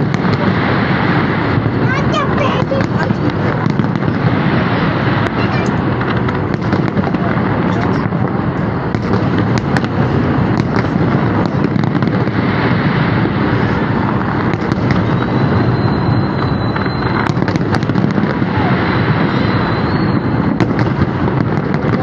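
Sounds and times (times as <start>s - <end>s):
fireworks cracks and pops: 0.0s - 22.0s
fireworks rumble: 0.0s - 22.0s
faint high whistle: 14.9s - 17.4s, 18.5s - 20.5s.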